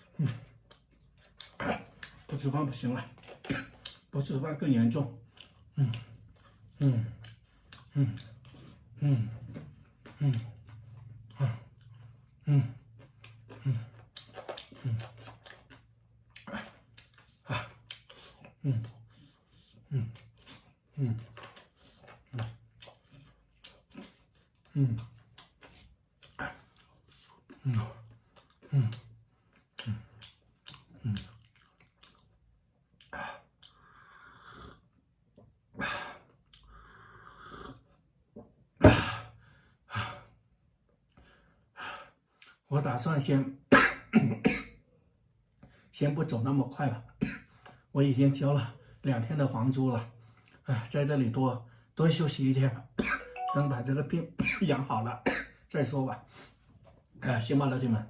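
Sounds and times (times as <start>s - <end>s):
man coughing: 43.7s - 44.8s.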